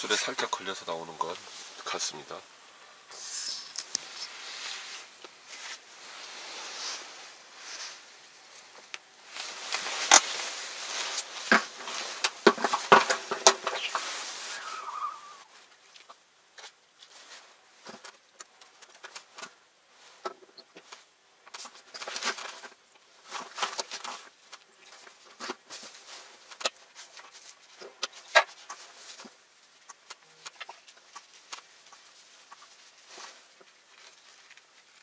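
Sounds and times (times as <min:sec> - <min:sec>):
fishing gear rustling: 0:01.2 - 0:20.2.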